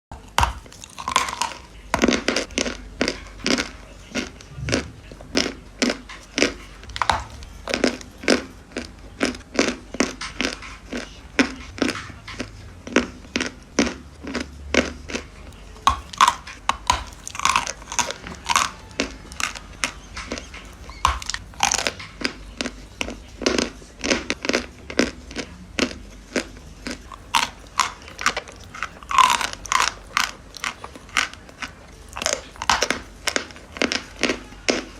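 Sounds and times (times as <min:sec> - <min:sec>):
chewing crunchy chalk: 0:00.1 - 0:34.9.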